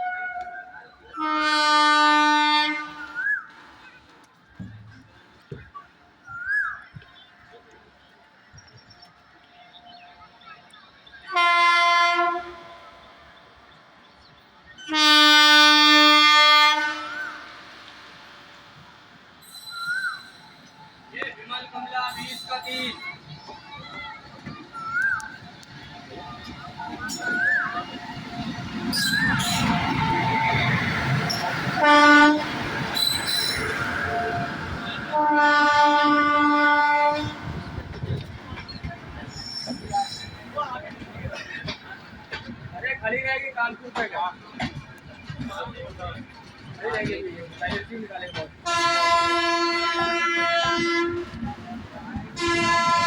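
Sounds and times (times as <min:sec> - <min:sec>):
locomotive horn blast: 0:00.0 - 0:03.3, 0:11.3 - 0:13.2, 0:14.8 - 0:18.5, 0:27.8 - 0:37.8, 0:48.6 - 0:51.5, 0:52.3 - 0:53.0
moving train rumble: 0:00.0 - 0:53.0
station background noise: 0:06.8 - 0:53.0.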